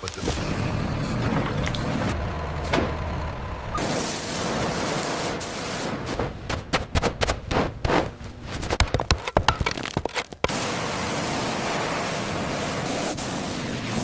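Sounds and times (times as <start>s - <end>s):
knocks clatters and scrapes: 7.2s - 10.6s.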